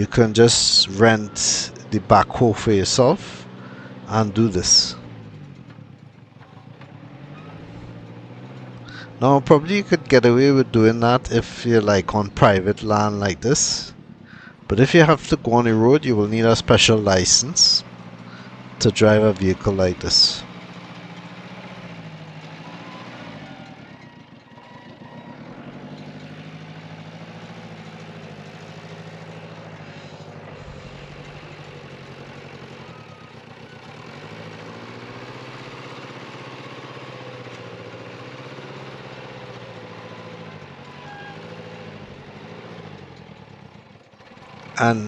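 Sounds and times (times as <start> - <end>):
diesel engine running under load: 0.0 - 45.0.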